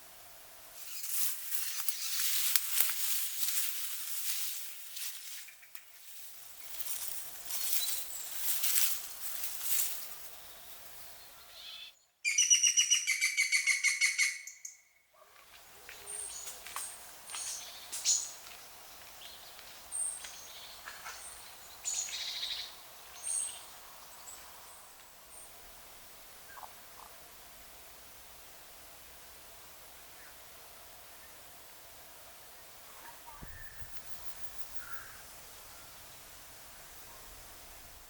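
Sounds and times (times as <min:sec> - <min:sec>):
high bird chirps: 0:11.6 - 0:14.8, 0:33.3 - 0:35.2.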